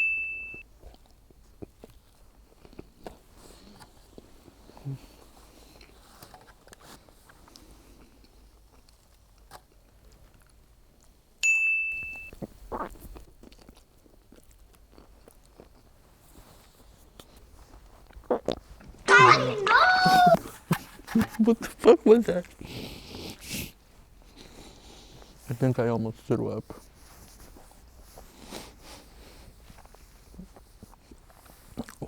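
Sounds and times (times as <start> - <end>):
chewing and mouth sounds: 0.8 - 6.0, 12.3 - 20.6, 29.6 - 32.0.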